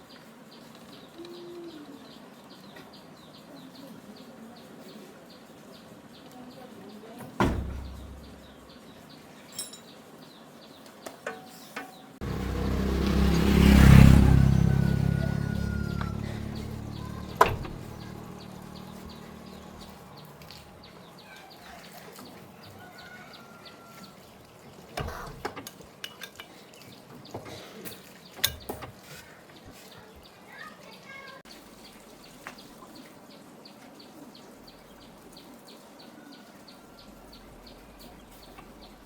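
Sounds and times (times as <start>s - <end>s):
hand tools clinking on metal: 9.4s - 10.0s
low mechanical drone: 12.2s - 20.4s.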